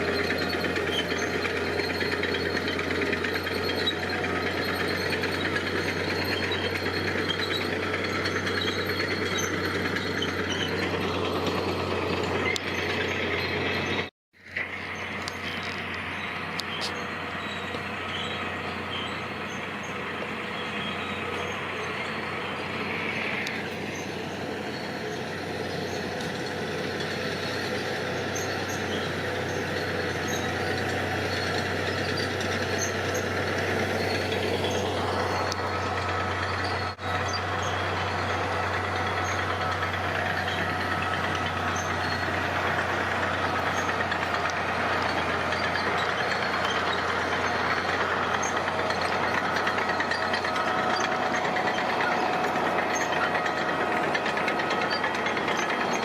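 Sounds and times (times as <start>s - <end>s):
heavy diesel engine running: 0.0s - 56.0s.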